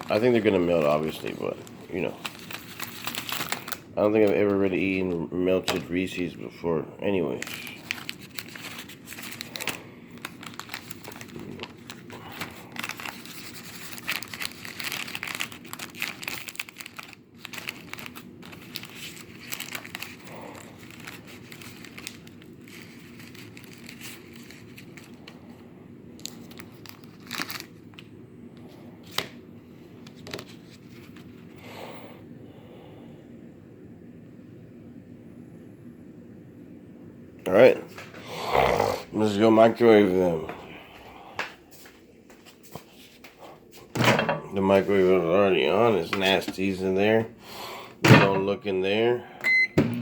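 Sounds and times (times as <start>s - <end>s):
plastic wrapper crinkling and tearing: 0.0s - 6.4s, 7.0s - 28.2s.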